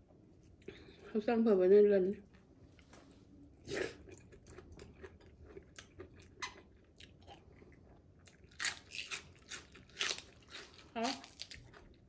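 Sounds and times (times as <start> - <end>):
person chewing: 3.6 - 12.0.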